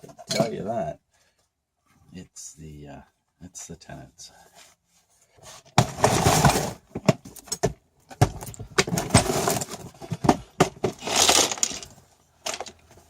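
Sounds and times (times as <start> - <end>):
rustling: 8.6 - 13.0.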